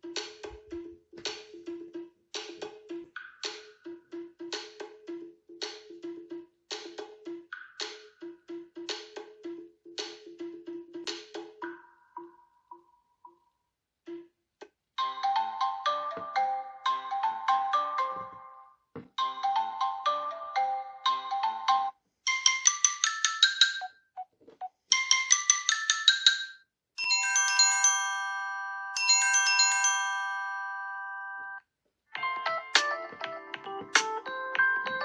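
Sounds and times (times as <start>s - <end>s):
phone ringtone melody: 15.0s - 31.6s, 32.2s - 35.0s
chime chord ringing: 27.0s - 31.6s.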